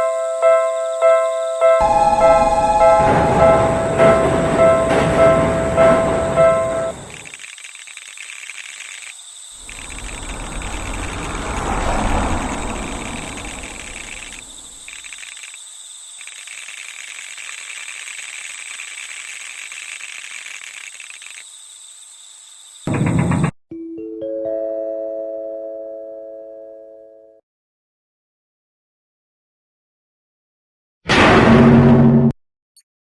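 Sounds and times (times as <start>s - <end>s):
insects chirping: 0.0s - 23.5s
low rumble: 9.6s - 14.9s
short loud burst: 9.6s - 15.0s.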